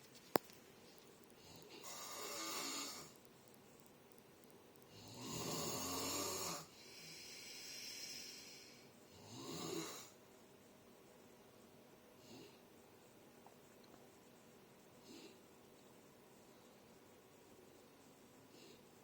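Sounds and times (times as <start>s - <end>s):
person snoring: 1.5s - 3.1s, 4.9s - 10.2s.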